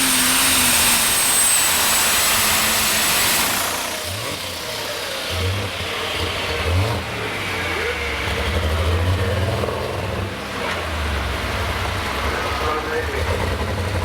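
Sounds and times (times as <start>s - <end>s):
tractor engine revving: 0.0s - 14.0s.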